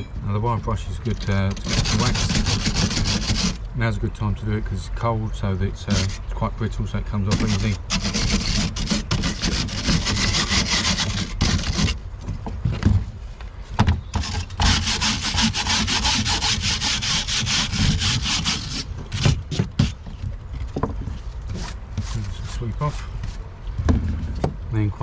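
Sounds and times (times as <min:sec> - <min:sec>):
wire brush scrubbing metal: 0:01.2 - 0:03.6, 0:05.8 - 0:06.3, 0:07.3 - 0:12.0, 0:14.2 - 0:20.0.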